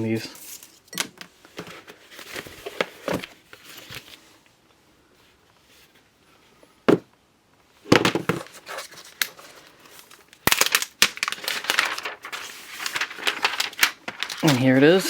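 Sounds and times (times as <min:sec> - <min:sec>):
paper crinkling and tearing: 0:08.5 - 0:15.0.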